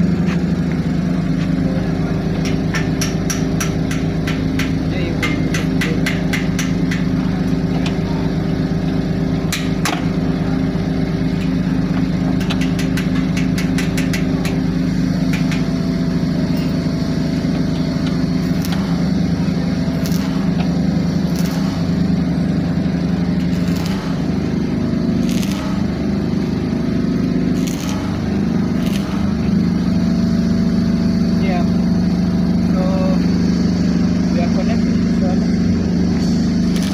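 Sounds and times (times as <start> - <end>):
small engine droning: 0.0 - 36.9
sharp taps: 2.4 - 7.1.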